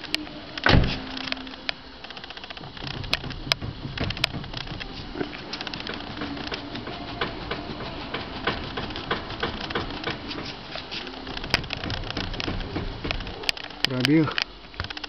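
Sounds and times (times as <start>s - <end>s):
steering rack knocking: 0.6s - 15.0s.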